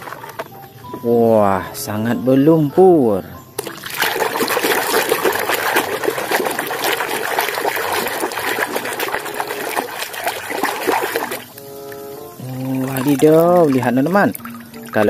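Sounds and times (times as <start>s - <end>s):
water running and splashing: 3.6s - 15.0s.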